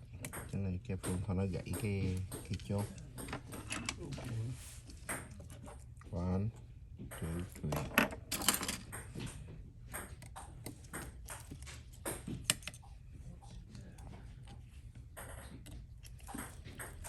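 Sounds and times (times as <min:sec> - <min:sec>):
hand tools clicking on phone parts: 0:00.2 - 0:04.2, 0:07.3 - 0:12.8.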